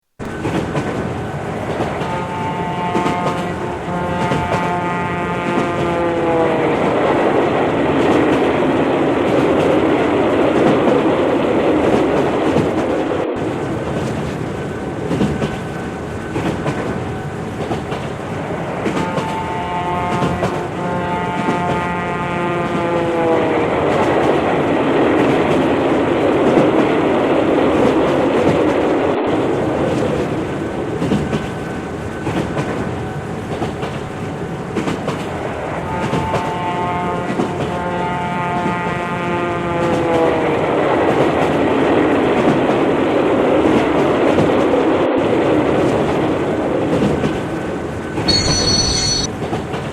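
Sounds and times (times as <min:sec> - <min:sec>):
train rumble and wheel clatter: 0:00.2 - 0:49.9
train horn: 0:02.0 - 0:07.2, 0:18.8 - 0:23.7, 0:35.8 - 0:40.6.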